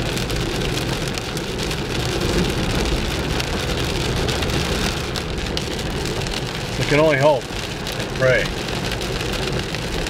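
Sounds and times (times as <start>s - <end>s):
rain on a car: 0.0s - 10.0s
road and engine noise: 0.0s - 10.0s.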